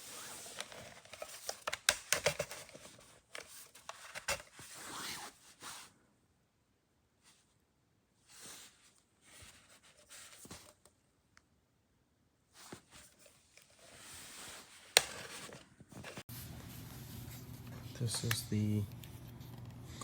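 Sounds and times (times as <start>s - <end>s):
rustling and scraping handling noise: 0.0s - 6.0s, 8.2s - 11.0s, 12.5s - 20.0s
low steady hum: 15.8s - 20.0s.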